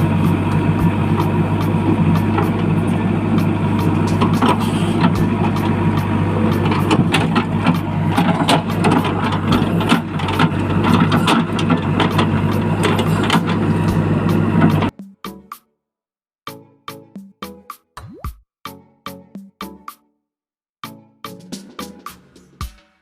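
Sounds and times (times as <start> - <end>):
vehicle engine humming: 0.0 - 14.9
clicks and clatter: 6.6 - 13.6.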